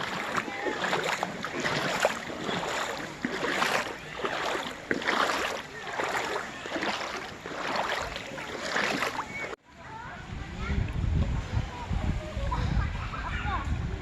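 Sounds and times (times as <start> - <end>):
stream water over rocks: 0.0 - 9.6
water splashes: 0.0 - 9.6.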